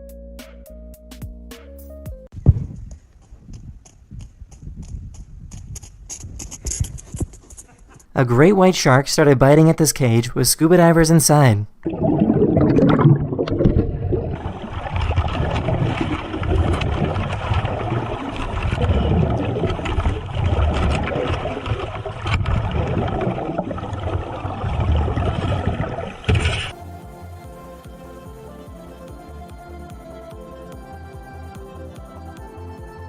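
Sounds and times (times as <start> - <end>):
water churning and bubbling: 11.7 - 27.1.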